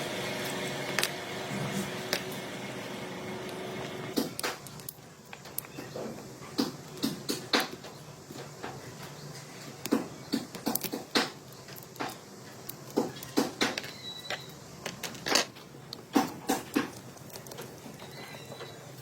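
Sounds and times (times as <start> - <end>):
small hard objects clicking: 3.4 - 8.8, 9.6 - 18.4.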